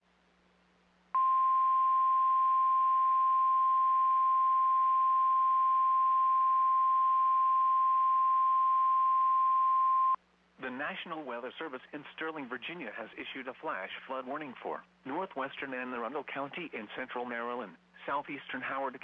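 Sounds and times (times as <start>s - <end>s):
faint low hum: 0.0s - 19.0s
steady warning alarm tone: 1.2s - 10.2s.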